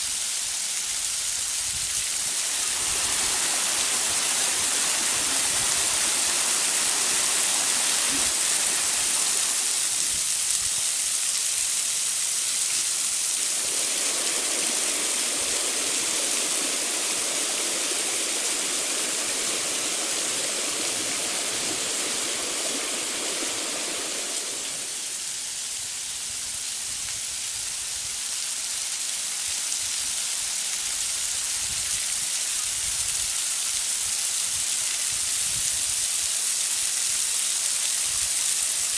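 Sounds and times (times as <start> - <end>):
waterfall rushing: 2.0 - 26.1.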